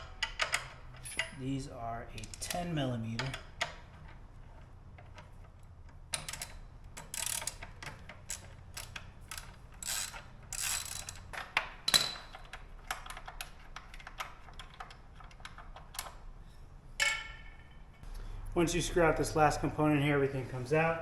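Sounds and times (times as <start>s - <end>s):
socket ratchet clicking: 6.1s - 16.2s.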